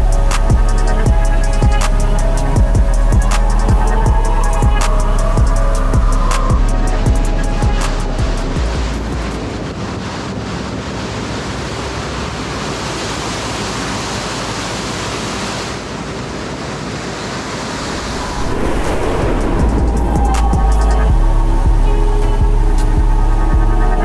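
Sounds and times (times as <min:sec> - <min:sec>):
waterfall rushing: 0:16.8 - 0:22.4.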